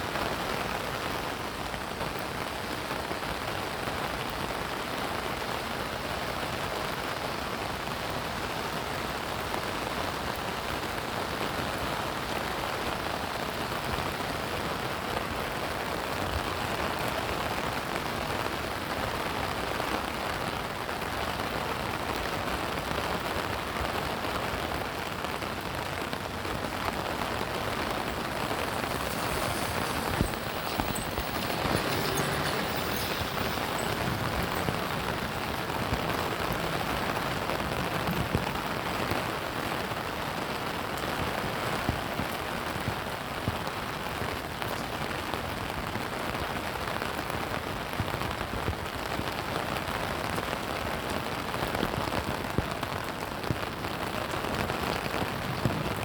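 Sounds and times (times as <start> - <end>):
steady rain falling: 0.0 - 56.0
water drips: 26.0 - 39.3.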